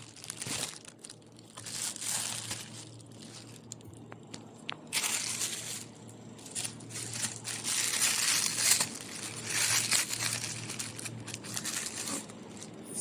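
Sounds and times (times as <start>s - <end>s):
packaging crinkling and rustling: 0.0s - 12.8s.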